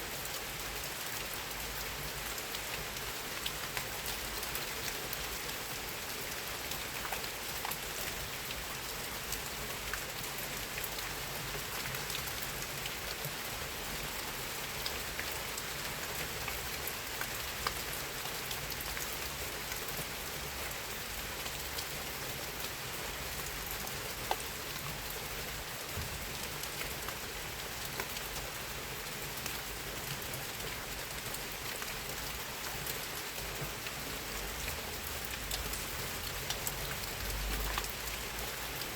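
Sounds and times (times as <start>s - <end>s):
steady rain falling: 0.0s - 38.9s
raindrops ticking on hard surface: 29.4s - 38.9s.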